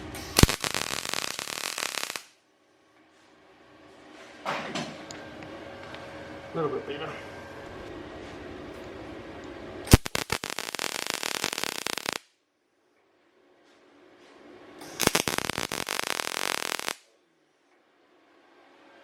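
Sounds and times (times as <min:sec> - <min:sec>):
welder arc crackling: 0:00.0 - 0:02.3, 0:09.9 - 0:12.2, 0:14.8 - 0:17.0.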